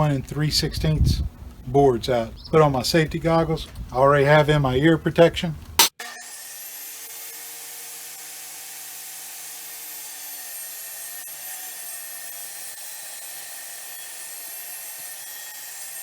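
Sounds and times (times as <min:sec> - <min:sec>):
table saw whining: 0:06.0 - 0:16.0.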